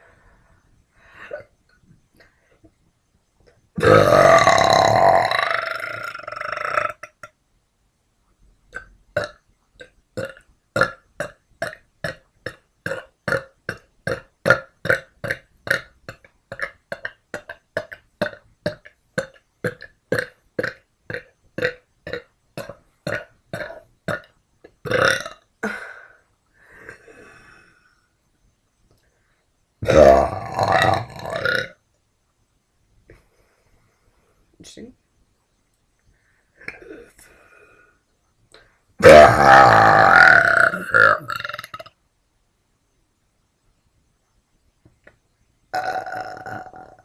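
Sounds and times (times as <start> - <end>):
woman burping: 1.2 - 1.6, 3.8 - 7.3, 10.2 - 26.2, 29.8 - 31.8, 39.0 - 41.9, 45.8 - 47.0.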